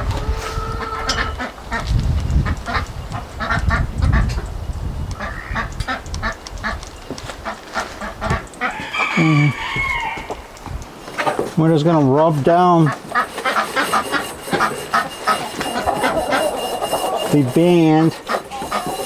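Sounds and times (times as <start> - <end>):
low rubbing noise: 0.0 - 5.1, 7.5 - 19.0
waterfowl calling: 5.2 - 6.0, 7.4 - 19.0.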